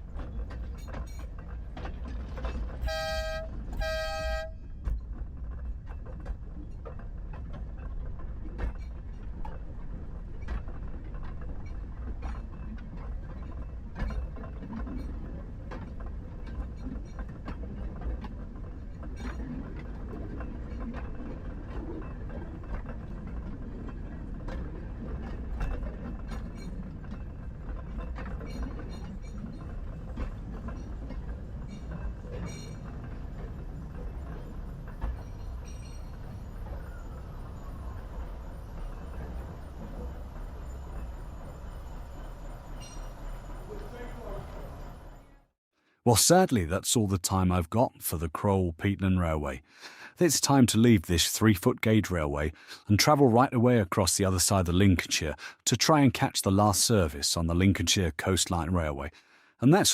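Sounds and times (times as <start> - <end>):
wheels clicking and clanking on track: 0.0 - 45.5
train rumbling: 0.0 - 59.9
train horn toots: 2.8 - 4.6.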